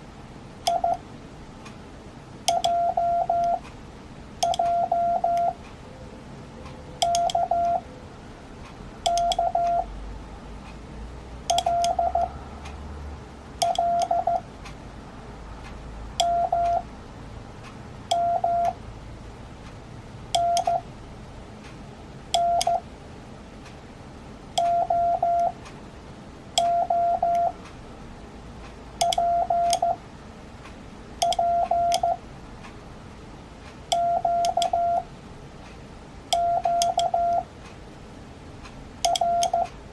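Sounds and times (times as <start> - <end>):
morse code beeps: 0.7 - 1.0, 2.5 - 3.6, 4.4 - 5.6, 7.0 - 7.8, 9.1 - 9.9, 11.5 - 12.3, 13.6 - 14.4, 16.2 - 16.8, 18.1 - 18.8, 20.4 - 20.8, 22.4 - 22.8, 24.6 - 25.6, 26.6 - 27.6, 29.0 - 30.0, 31.2 - 32.2, 33.9 - 35.0, 36.3 - 37.5, 39.1 - 39.7
click: 2.5 - 2.8, 3.4 - 3.8, 4.4 - 4.8, 6.6 - 7.8, 8.6 - 9.8, 20.4 - 20.8, 22.4 - 22.8, 28.6 - 29.9, 30.6 - 32.8, 33.6 - 34.8, 35.6 - 37.8, 38.6 - 39.8.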